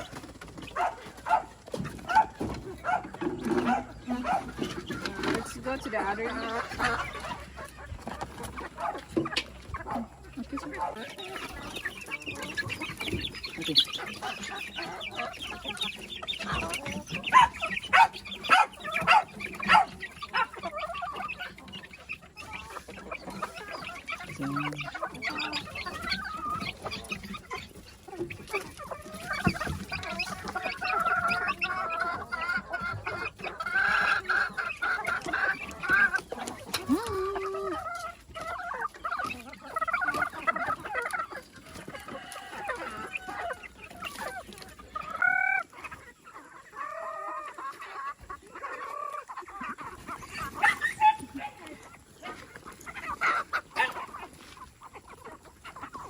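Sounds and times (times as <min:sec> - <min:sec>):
chickens clucking: 0:00.0 - 0:56.0
rooster crowing: 0:41.9 - 0:43.7.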